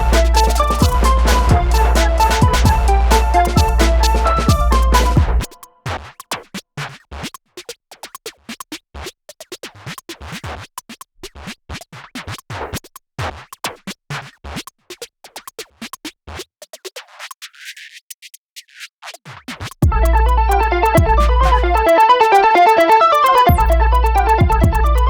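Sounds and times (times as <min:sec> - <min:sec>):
background music: 0:00.0 - 0:05.8, 0:19.9 - 0:25.0.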